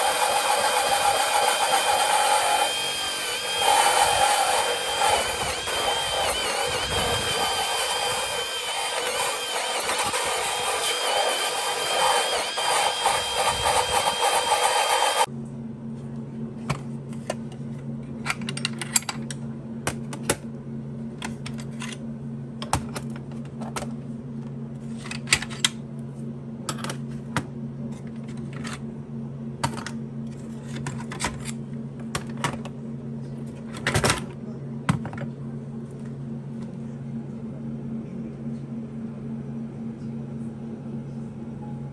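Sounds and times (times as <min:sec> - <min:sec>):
power tool whirring: 0:00.0 - 0:15.3
steady low hum: 0:00.0 - 0:41.9.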